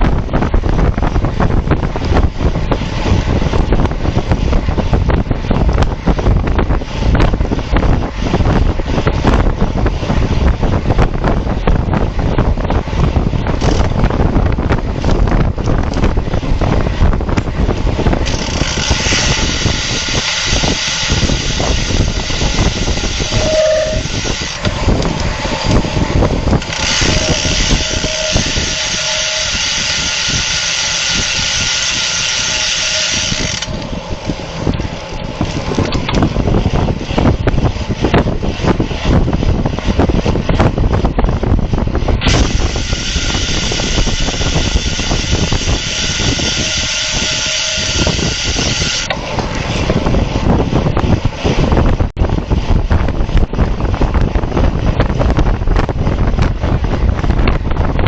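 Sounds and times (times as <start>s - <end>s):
wind rushing over camera: 0.0s - 58.0s
freewheel ratchet clicking: 13.4s - 14.3s, 14.9s - 38.3s, 42.2s - 49.9s.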